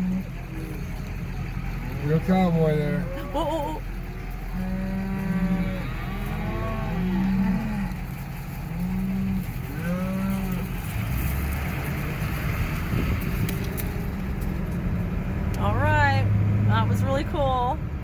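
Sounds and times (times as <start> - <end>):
cows mooing: 0.0 - 11.6
vehicle engine running: 0.0 - 18.0.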